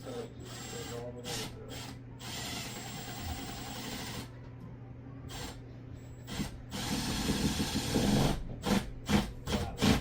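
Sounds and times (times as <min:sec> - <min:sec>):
power drill boring drywall: 0:00.5 - 0:04.2, 0:06.3 - 0:10.0.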